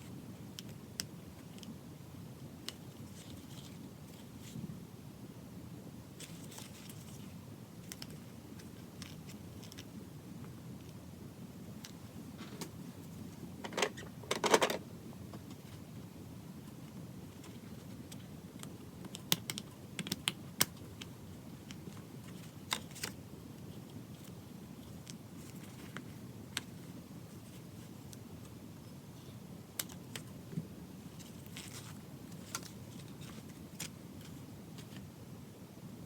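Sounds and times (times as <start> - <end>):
low room hum: 0.0 - 36.0
hands handling a notebook: 31.0 - 35.1.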